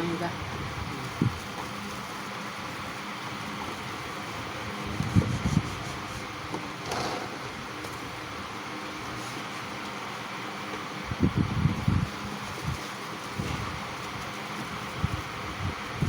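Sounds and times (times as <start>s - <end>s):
fan whirring: 0.0s - 16.0s
scraping rustle: 4.7s - 8.1s.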